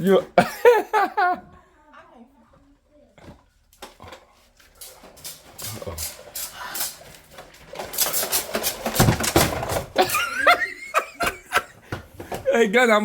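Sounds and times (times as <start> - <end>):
water gun spraying hisses: 4.8 - 7.3.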